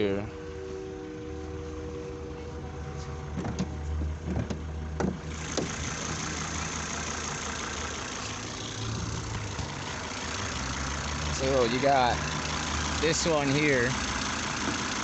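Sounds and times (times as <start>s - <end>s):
car engine idling: 0.0s - 15.0s
sharp clicks and knocks: 3.4s - 5.8s.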